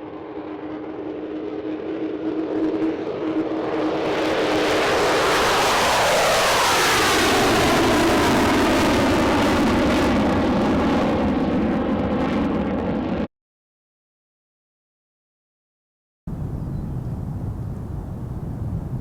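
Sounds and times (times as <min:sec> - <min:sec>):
jet engine passing close by: 0:00.0 - 0:13.3, 0:16.3 - 0:19.0.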